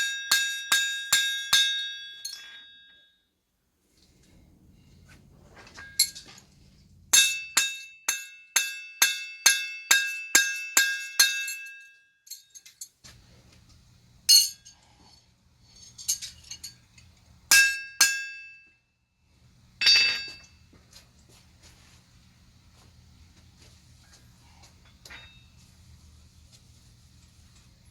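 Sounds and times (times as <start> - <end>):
hammer striking steel on anvil: 0.0 - 3.1, 7.2 - 12.4, 14.3 - 14.7, 17.5 - 18.7, 19.8 - 20.5.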